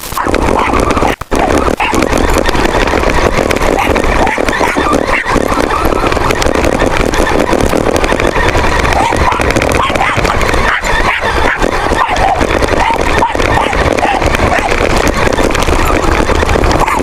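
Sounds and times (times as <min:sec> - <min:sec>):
toy rover running: 0:00.0 - 0:17.0
small dog barking and yipping: 0:00.1 - 0:02.4, 0:03.6 - 0:06.2, 0:08.7 - 0:17.0.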